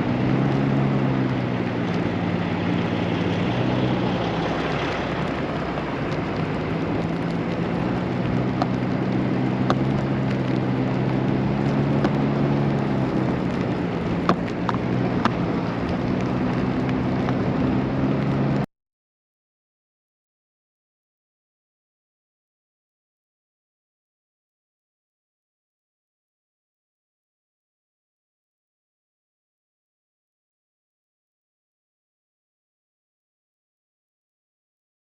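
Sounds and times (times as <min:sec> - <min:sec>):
constant rushing noise: 0:00.0 - 0:18.7.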